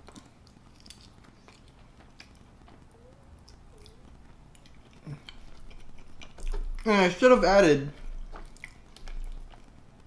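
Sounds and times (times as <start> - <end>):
close chewing: 0.0 - 6.9, 7.8 - 10.0
wet mouth clicks: 0.8 - 6.8.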